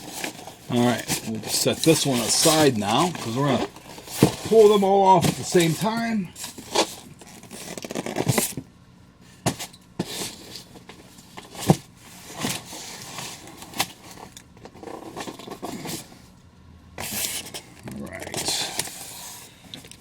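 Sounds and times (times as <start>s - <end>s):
packaging knocks and scrapes: 0.0s - 8.6s, 9.5s - 16.2s.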